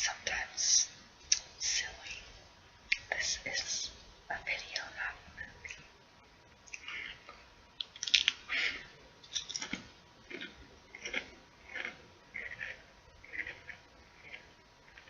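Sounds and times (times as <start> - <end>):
chewing crunchy potato chips: 7.8 - 14.4.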